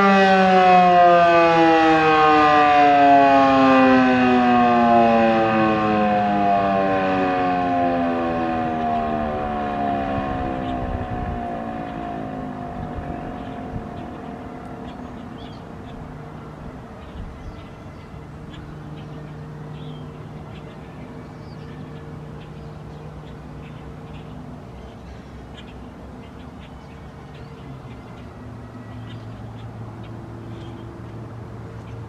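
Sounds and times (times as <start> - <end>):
siren winding down: 0.0 - 17.5
steady low hum: 2.2 - 32.0
bird calls: 12.8 - 32.0.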